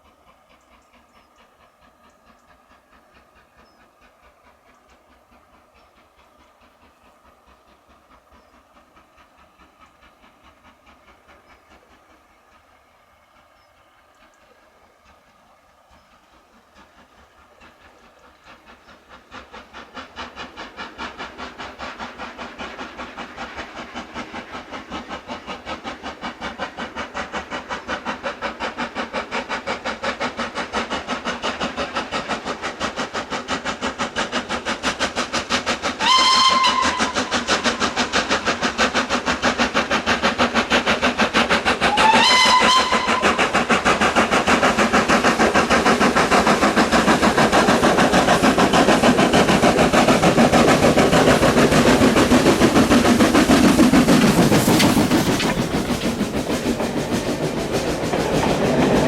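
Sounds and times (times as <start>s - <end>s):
steam locomotive exhaust beats: 0.0s - 59.0s
steam whistle blasts: 36.0s - 37.3s, 41.9s - 43.4s.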